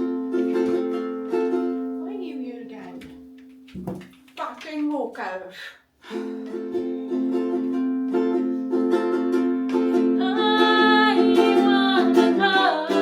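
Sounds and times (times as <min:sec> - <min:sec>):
ukulele strumming: 0:00.0 - 0:04.7, 0:06.1 - 0:13.0
person singing: 0:09.9 - 0:13.0.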